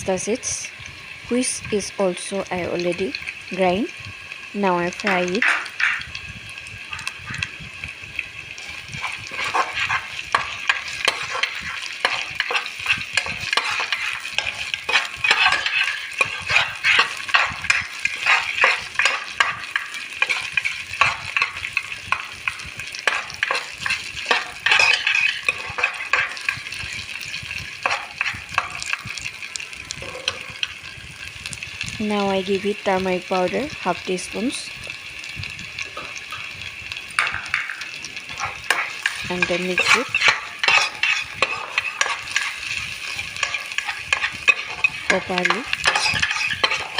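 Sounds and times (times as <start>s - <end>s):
food sizzling in oil: 0.0s - 46.9s
spatula scraping pan: 5.0s - 6.2s, 8.6s - 30.7s, 37.2s - 46.9s.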